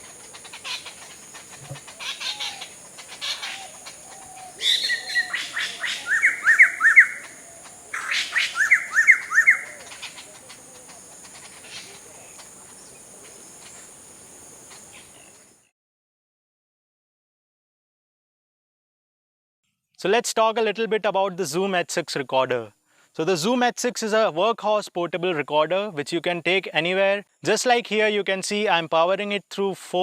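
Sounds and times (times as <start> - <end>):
birds calling and chirping: 0.0 - 15.7
high insect buzz: 0.0 - 15.7.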